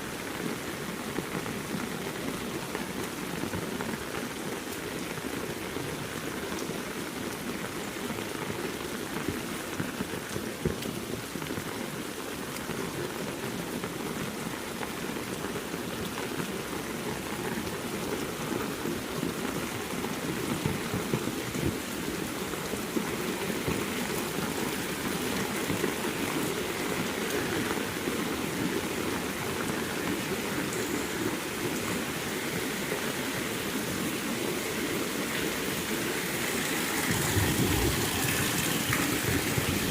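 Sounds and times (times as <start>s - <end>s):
heavy rain falling: 0.0s - 39.9s
loud raindrop impacts: 37.0s - 39.9s.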